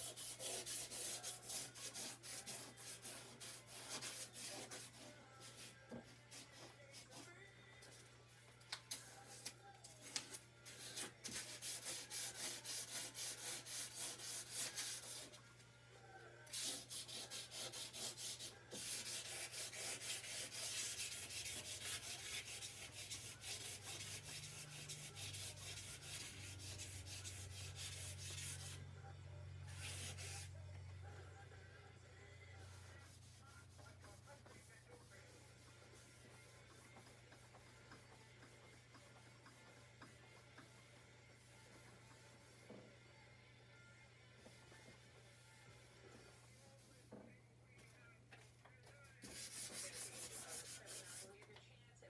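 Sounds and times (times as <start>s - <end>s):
sandpaper rubbing on steel: 0.0s - 5.7s, 10.8s - 15.4s, 16.5s - 28.8s, 29.7s - 30.5s, 49.2s - 51.3s.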